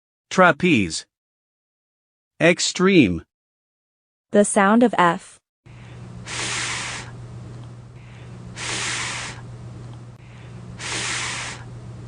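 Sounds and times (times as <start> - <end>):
steady low hum: 5.7 - 12.0
person making breathy f sound: 6.3 - 7.1, 8.0 - 9.4, 10.8 - 11.7.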